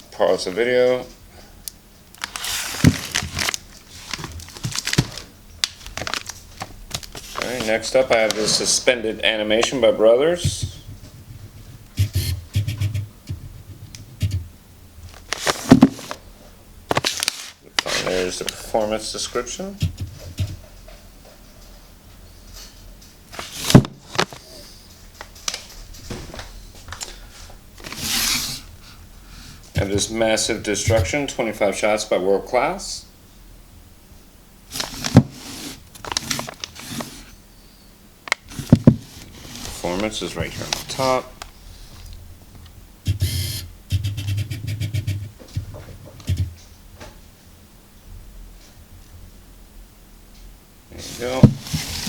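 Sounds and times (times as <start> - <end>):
cardboard box scraping: 2.2 - 5.2, 7.1 - 8.7, 15.2 - 16.2, 23.4 - 24.5, 27.8 - 28.7, 34.7 - 37.3, 38.5 - 41.2, 51.0 - 52.0
handling thumps and rubbing: 5.9 - 8.8, 10.4 - 14.5, 15.1 - 16.2, 16.9 - 18.2, 23.3 - 24.7, 38.4 - 41.5, 51.0 - 52.0
box thump set down: 15.2 - 16.2, 16.9 - 17.3, 23.4 - 24.5, 34.8 - 35.4, 38.6 - 39.4, 51.3 - 52.0.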